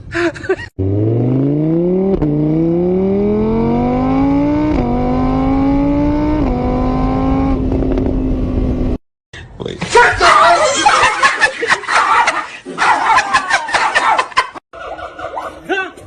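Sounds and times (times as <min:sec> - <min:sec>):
vehicle engine accelerating: 0:00.8 - 0:09.0.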